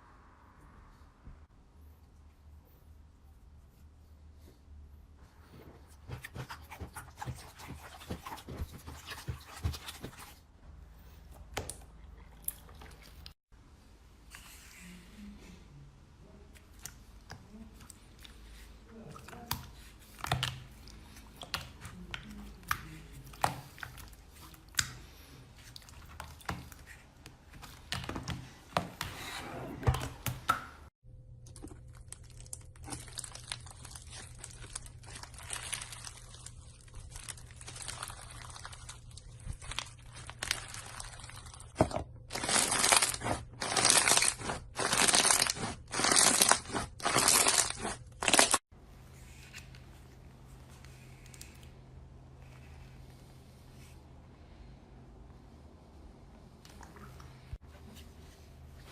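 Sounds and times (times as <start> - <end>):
slime crinkling and crackling: 5.7 - 10.4, 31.5 - 48.7.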